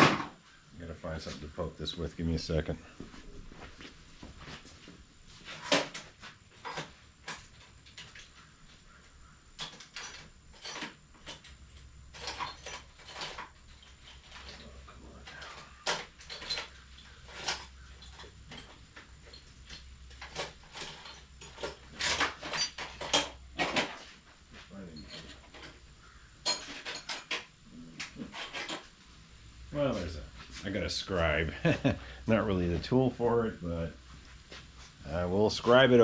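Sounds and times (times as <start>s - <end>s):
hand tools clattering: 9.6s - 24.2s, 26.4s - 28.9s.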